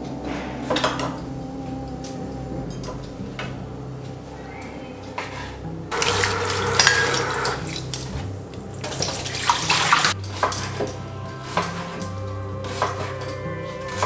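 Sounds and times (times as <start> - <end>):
dishes and cutlery clinking: 0.0 - 3.7, 4.5 - 14.0
soft background music: 0.0 - 14.0
tap water running into sink: 5.2 - 14.0.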